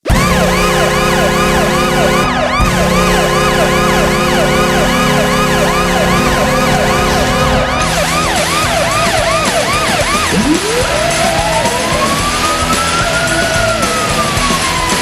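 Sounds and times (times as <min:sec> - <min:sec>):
siren sweeping up and down: 0:00.0 - 0:15.0
arena goal horn chord: 0:00.1 - 0:08.4.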